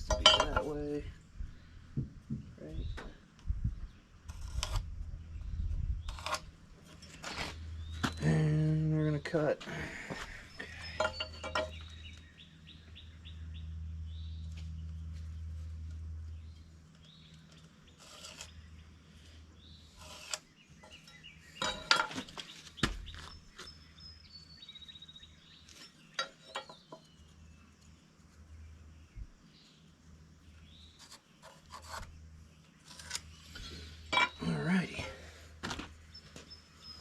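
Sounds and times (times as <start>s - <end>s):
low steady hum: 0.0s - 37.0s
small birds chirping: 0.0s - 37.0s
sharp knocks and clatters: 11.0s - 11.9s, 21.6s - 23.2s, 26.1s - 27.0s.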